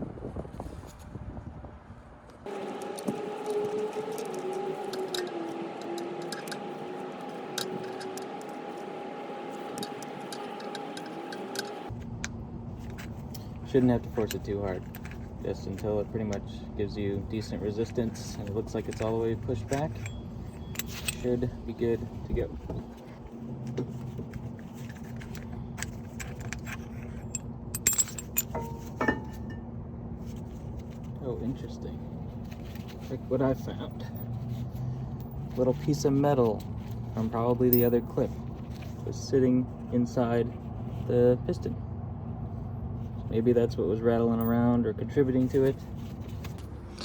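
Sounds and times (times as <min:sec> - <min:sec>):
steady low hum: 0:02.4 - 0:47.0
low wavering tone: 0:02.5 - 0:11.9
steady whine: 0:02.5 - 0:30.6
compressor tool clicks and creaks: 0:02.6 - 0:16.5, 0:17.9 - 0:21.5, 0:23.7 - 0:29.6
light metallic clicks and clinks: 0:25.8 - 0:29.6, 0:37.7 - 0:38.3.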